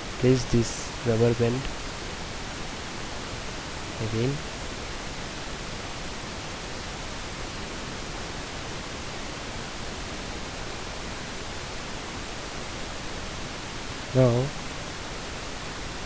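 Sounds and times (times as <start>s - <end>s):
steady hiss: 0.0s - 6.0s.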